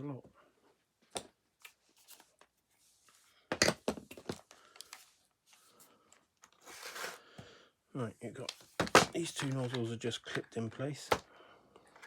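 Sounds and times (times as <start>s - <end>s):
plastic scraping and rustling: 3.6s - 7.2s, 8.4s - 11.2s
plastic parts clicking and knocking: 8.4s - 12.0s.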